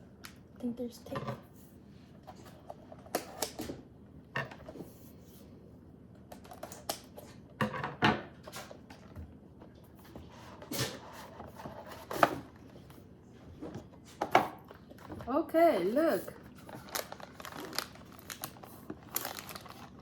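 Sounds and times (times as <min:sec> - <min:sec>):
tape and paper rustling: 0:16.4 - 0:20.0.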